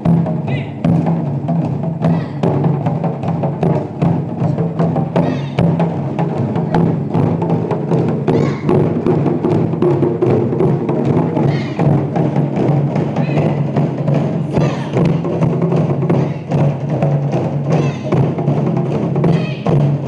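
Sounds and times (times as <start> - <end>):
drum ensemble playing: 0.0 - 20.0.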